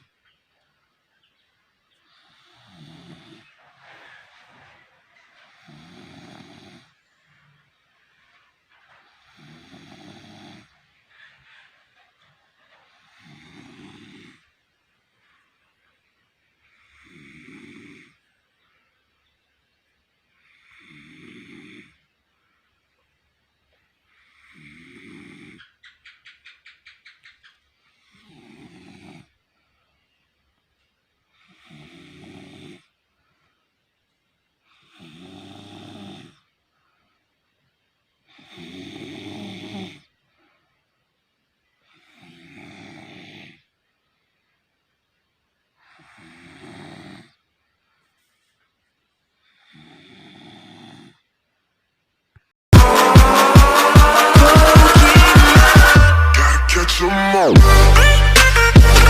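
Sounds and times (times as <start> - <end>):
quiet breathing: 0.0 - 25.8, 27.7 - 51.5
harsh rasping snores: 2.1 - 7.0, 9.0 - 12.0, 12.9 - 14.6, 16.7 - 18.3, 20.4 - 22.1, 24.1 - 25.8, 28.0 - 29.4, 31.4 - 33.0, 34.7 - 36.5, 38.3 - 40.1, 41.8 - 43.7, 45.8 - 47.4, 49.5 - 51.3
fluttering snore rattle: 2.2 - 14.6, 16.8 - 18.3, 20.5 - 22.0, 24.2 - 25.8, 28.0 - 29.4, 31.5 - 32.9, 34.8 - 36.5, 38.4 - 40.1, 42.0 - 43.7, 45.9 - 47.4, 49.6 - 51.2.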